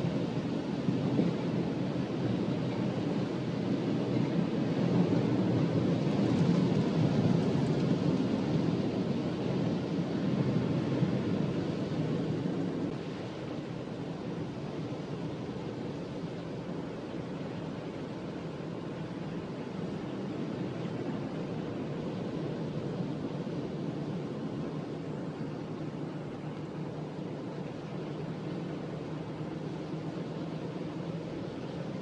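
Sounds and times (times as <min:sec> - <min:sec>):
wind and rain rushing: 0:00.0 - 0:32.0.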